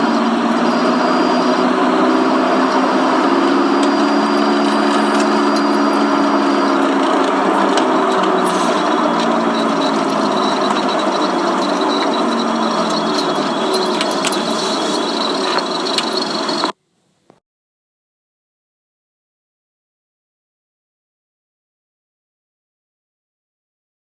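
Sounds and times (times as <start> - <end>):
vehicle engine drone: 0.0 - 16.8.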